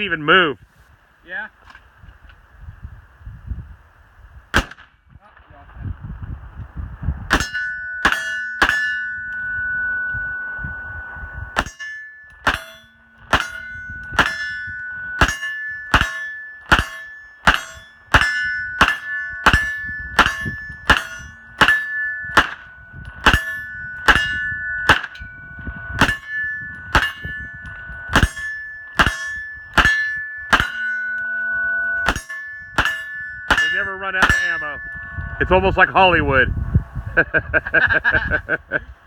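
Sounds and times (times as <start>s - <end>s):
pistol shots: 4.5s - 4.9s
metallic ringing of steel target: 7.0s - 37.3s.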